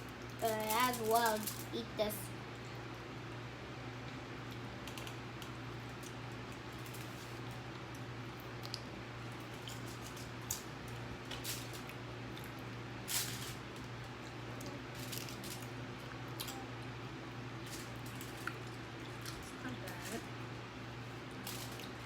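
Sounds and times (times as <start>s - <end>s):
food crunching: 17.6s - 19.9s, 21.0s - 22.0s.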